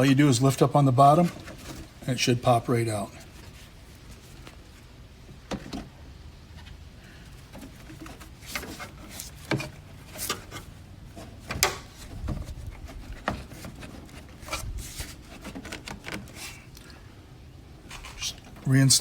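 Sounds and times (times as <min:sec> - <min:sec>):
plastic clicks and knocks: 0:11.4 - 0:14.2.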